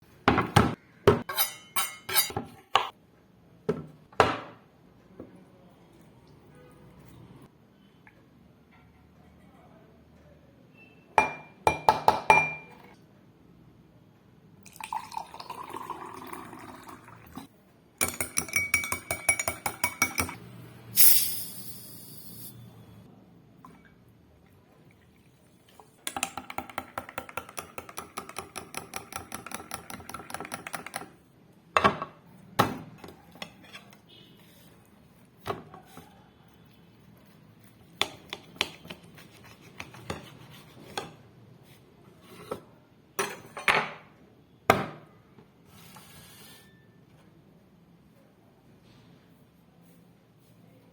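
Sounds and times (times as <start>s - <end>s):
liquid pouring: 14.7s - 17.4s
spoon clinking against glass: 18.0s - 20.4s.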